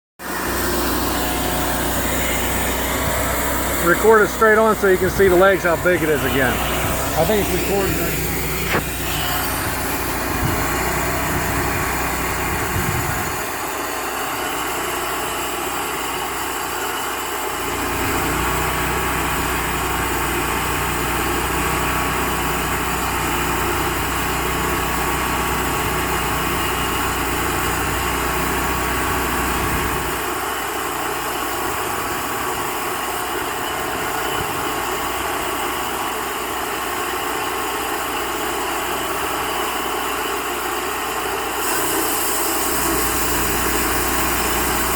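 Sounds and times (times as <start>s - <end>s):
band sawmill running: 0.2s - 44.9s.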